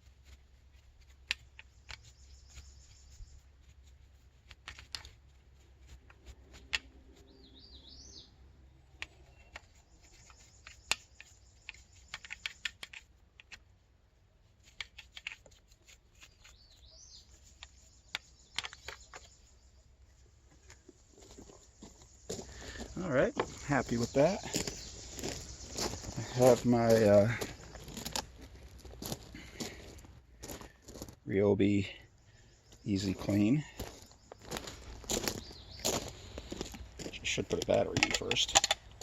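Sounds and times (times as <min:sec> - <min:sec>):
bird chirping: 0:01.4 - 0:04.3, 0:06.1 - 0:13.5, 0:14.7 - 0:30.7, 0:31.4 - 0:38.6
clicks and knocks on bicycle: 0:38.0 - 0:38.8.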